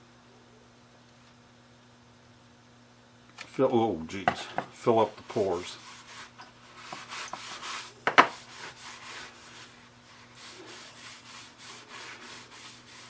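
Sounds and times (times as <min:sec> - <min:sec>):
applicator rubbing on wood: 0:05.3 - 0:13.0.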